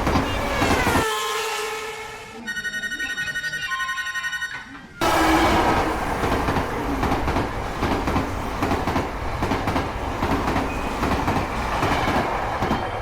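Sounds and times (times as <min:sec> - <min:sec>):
train wheels clattering on rails: 0:05.0 - 0:13.0.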